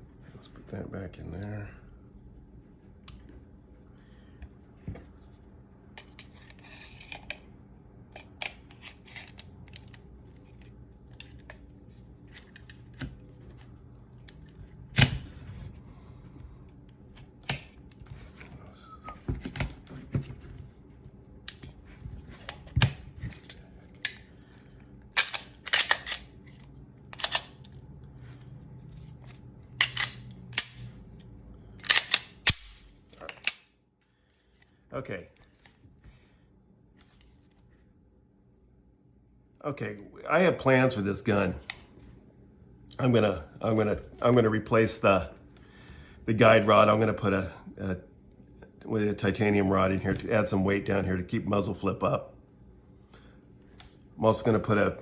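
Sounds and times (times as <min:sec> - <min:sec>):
pistol parts clicking: 0:25.2 - 0:26.3, 0:27.1 - 0:27.7, 0:29.8 - 0:30.9, 0:31.8 - 0:33.7.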